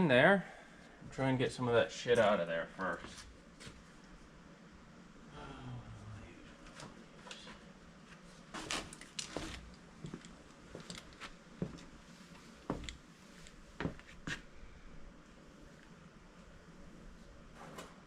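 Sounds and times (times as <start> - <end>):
rustling and scraping: 2.9 - 4.0, 6.6 - 14.5.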